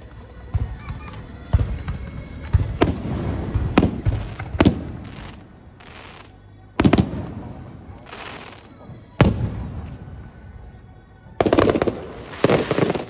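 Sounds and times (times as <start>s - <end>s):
firework shells bursting: 1.0s - 10.0s, 11.4s - 13.0s
firework crackling and hiss: 2.5s - 10.1s, 11.4s - 13.0s.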